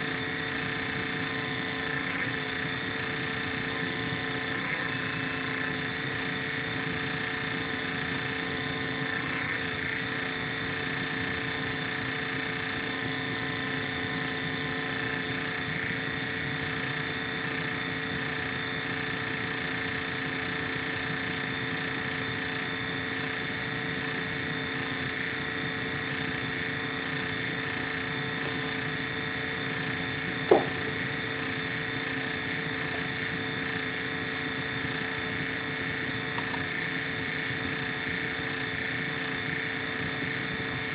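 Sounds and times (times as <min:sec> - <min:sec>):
laptop cooling fan whining: 0:00.0 - 0:40.9.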